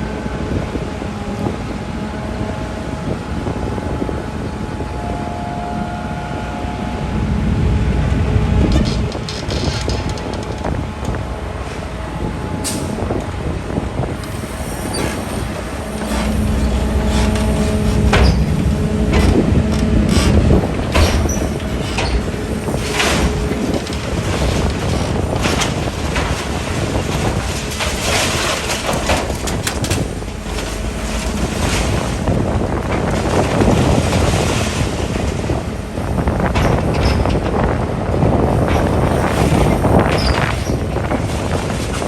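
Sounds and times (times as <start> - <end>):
excavator diesel engine humming: 0.0 - 42.0
steady whine: 10.7 - 34.1
metallic clanks and knocks: 14.9 - 37.8.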